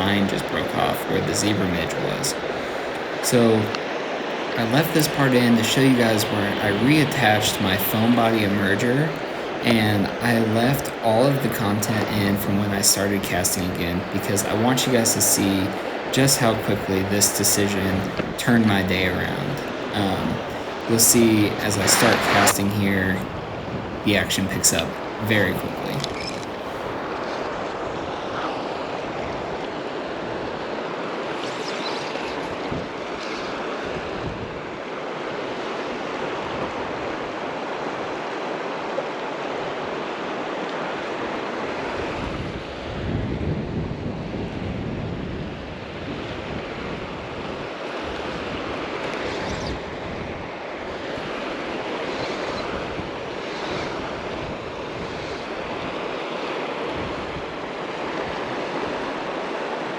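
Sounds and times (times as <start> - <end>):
wind buffeting microphone: 0.0 - 27.6, 33.9 - 34.7, 42.0 - 56.1
river water rushing: 0.0 - 29.1, 53.2 - 59.9.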